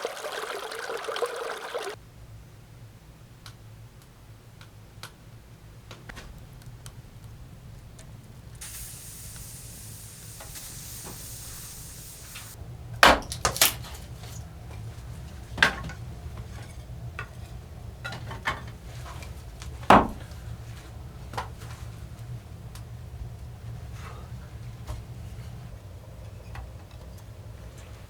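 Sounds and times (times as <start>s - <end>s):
high hiss: 8.6s - 12.6s
steady low rumble: 13.9s - 27.8s.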